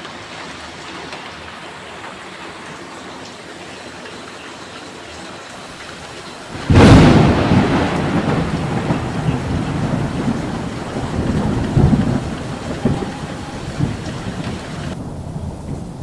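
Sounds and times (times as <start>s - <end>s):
heavy rain: 0.0s - 16.0s
thunder crack and rumble: 5.9s - 16.0s.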